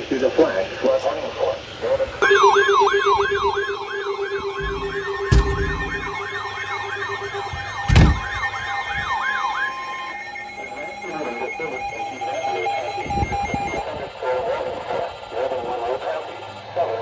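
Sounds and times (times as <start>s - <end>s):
electronic siren yelping: 2.2s - 13.8s
sharp thumps: 4.3s - 8.7s.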